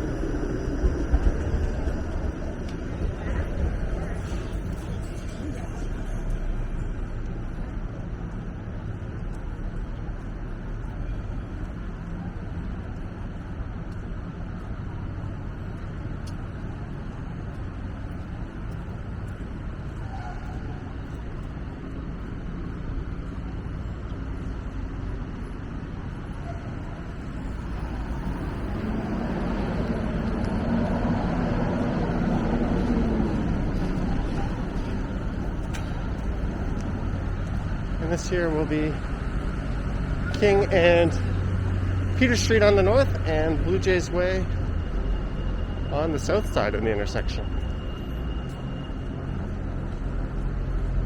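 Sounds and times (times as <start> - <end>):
city traffic hum: 0.0 - 51.0
vehicle engine approaching: 26.8 - 51.0.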